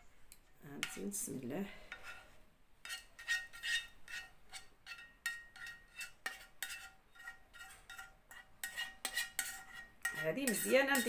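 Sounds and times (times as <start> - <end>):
metal spoon clinking in pot: 2.9 - 11.0.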